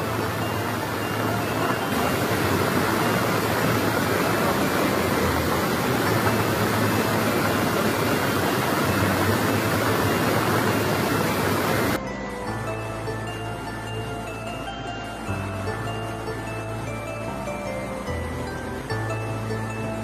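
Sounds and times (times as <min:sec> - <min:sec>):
floodwater rushing: 0:00.0 - 0:12.0.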